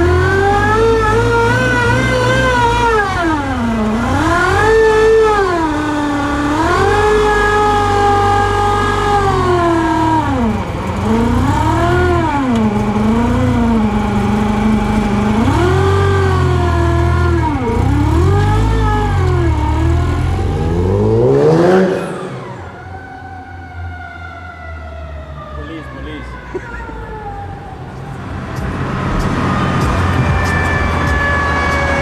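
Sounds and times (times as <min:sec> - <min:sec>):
car engine revving: 0:00.0 - 0:32.0.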